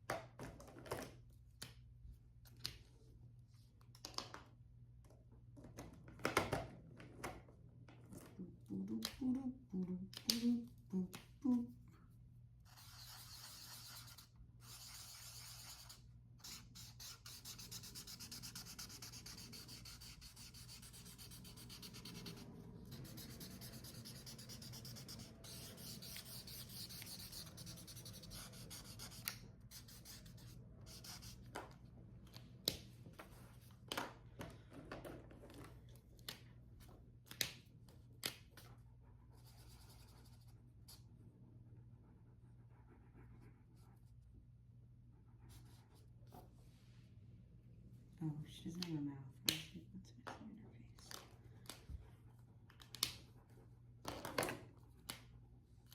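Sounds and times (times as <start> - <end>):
drawing tip scratching on paper: 12.7 - 31.4.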